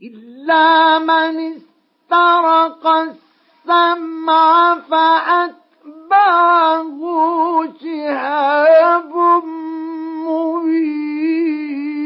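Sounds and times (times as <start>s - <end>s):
man chanting melodic recitation: 0.0s - 12.0s.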